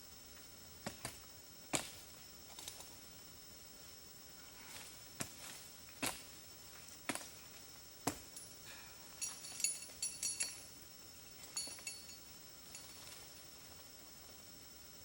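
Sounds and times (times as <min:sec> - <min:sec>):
light metallic clinks: 0:08.3 - 0:13.8
faint steady high tone: 0:08.4 - 0:15.0.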